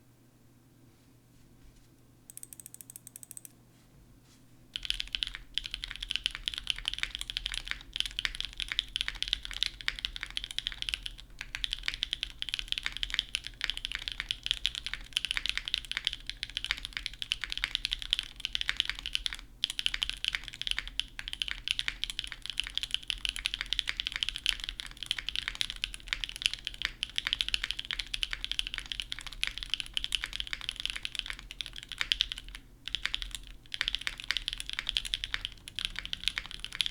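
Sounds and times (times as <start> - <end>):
typing on mechanical keyboard: 2.3 - 3.5, 4.8 - 36.9.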